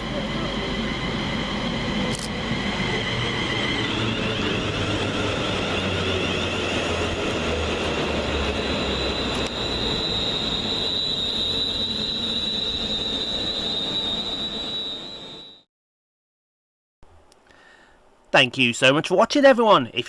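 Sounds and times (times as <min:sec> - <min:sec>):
train wheels rumbling: 0:00.0 - 0:15.4
high-pitched brake squeal: 0:00.2 - 0:15.7.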